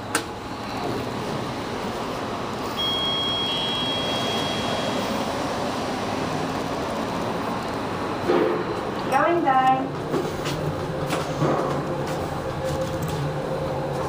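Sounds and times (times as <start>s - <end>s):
steady mechanical hum: 0.0s - 14.0s
electronic elevator chime: 2.7s - 5.5s.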